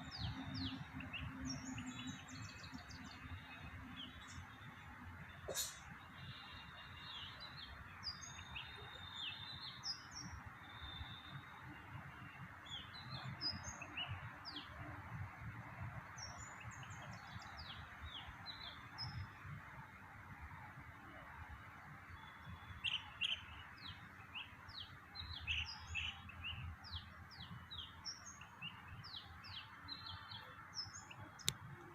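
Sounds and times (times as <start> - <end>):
birds chirping: 0.0 - 19.9, 21.3 - 31.9.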